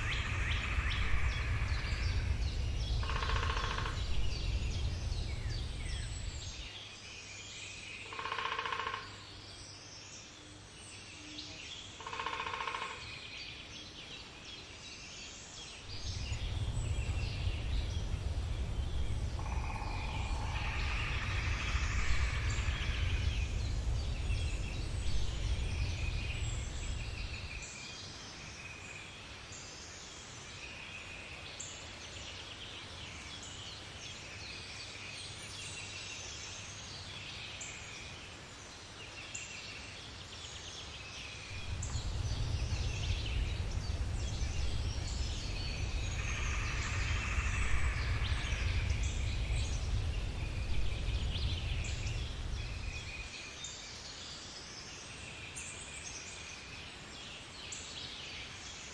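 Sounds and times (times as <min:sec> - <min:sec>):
low rumble: 0:00.0 - 0:06.8, 0:15.8 - 0:27.8, 0:41.4 - 0:53.4
rapidly pulsed bird sound: 0:00.0 - 0:30.9, 0:39.5 - 0:58.9.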